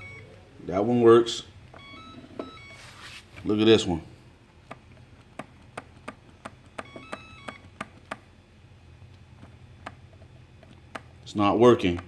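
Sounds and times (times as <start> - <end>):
foot-pad trigger clicks: 4.6 - 8.3.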